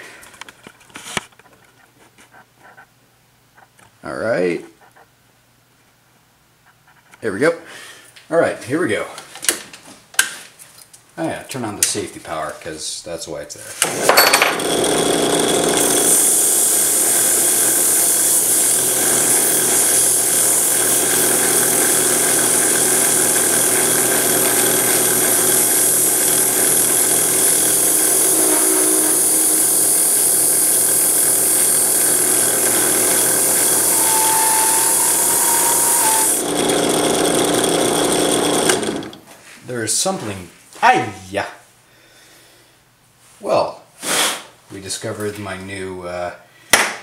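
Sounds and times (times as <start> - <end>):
drill press motor hum: 13.8 - 39.2
wire brush scrubbing pipe: 18.6 - 37.9.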